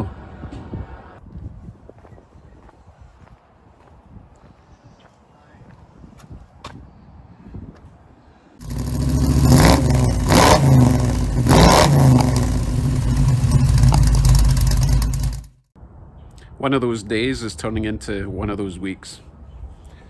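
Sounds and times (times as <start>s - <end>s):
car engine revving: 8.6s - 15.5s.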